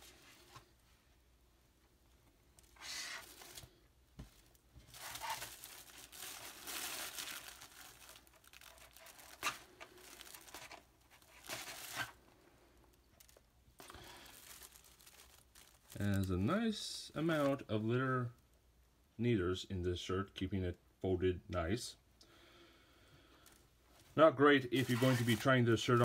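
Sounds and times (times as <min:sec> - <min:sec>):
packaging crinkling and rustling: 0:02.6 - 0:16.6, 0:24.7 - 0:26.0.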